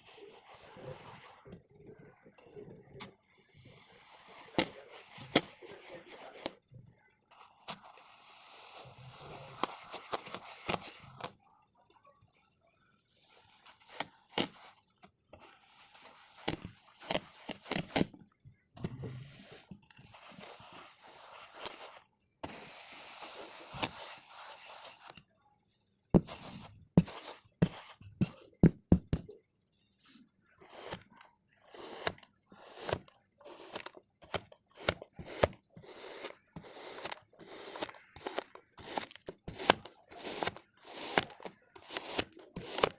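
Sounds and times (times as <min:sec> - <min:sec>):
comb cutting sand crunching: 0:32.7 - 0:42.9.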